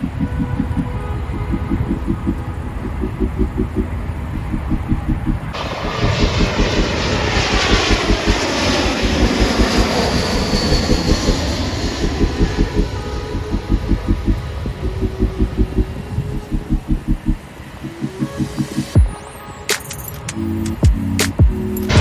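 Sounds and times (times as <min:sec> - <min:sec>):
jet airliner flying past: 0:00.0 - 0:16.5.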